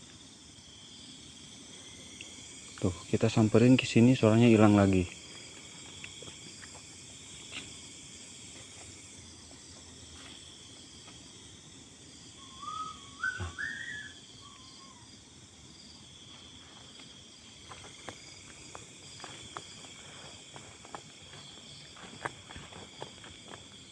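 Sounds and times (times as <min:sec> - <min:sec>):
crickets chirping: 0:00.0 - 0:23.9
wavering whistle: 0:12.4 - 0:15.0.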